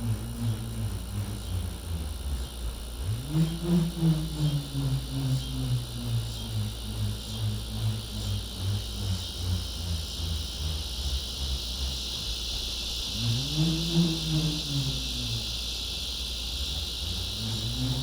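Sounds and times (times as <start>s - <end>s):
bull roarer pulsing hum: 0.0s - 18.0s
cicadas buzzing: 0.0s - 18.0s.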